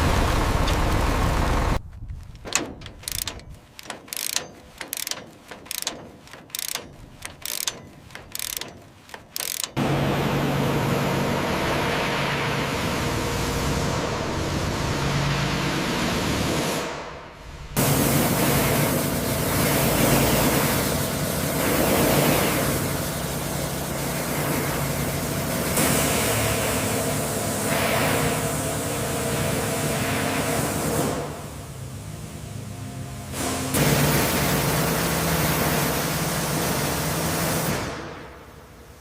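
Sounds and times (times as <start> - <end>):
low mechanical hum: 0.0 - 39.0
sharp mechanical clicks: 2.2 - 9.8.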